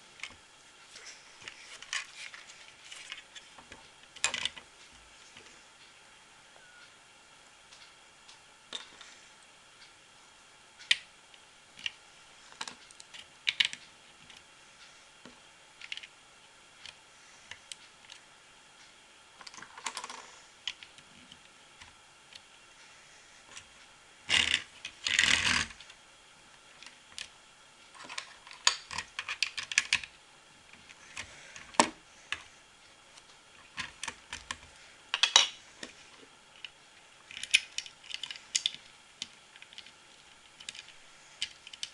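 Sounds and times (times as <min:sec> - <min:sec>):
plastic bricks clicking: 0:33.7 - 0:35.6, 0:37.3 - 0:40.0.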